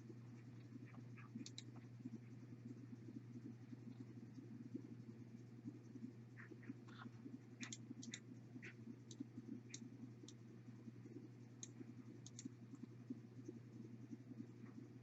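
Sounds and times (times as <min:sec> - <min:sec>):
low steady hum: 0:00.0 - 0:15.0
computer mouse clicks: 0:00.6 - 0:01.9, 0:06.9 - 0:10.4, 0:11.5 - 0:13.6.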